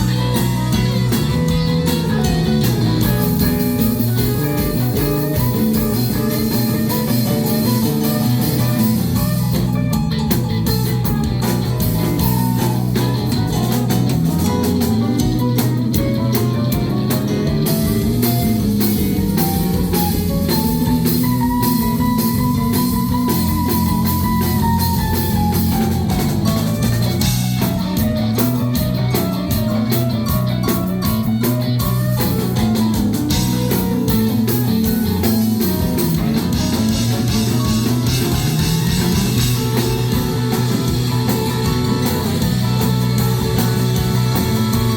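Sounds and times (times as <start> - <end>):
rock band playing: 0.0 - 44.9.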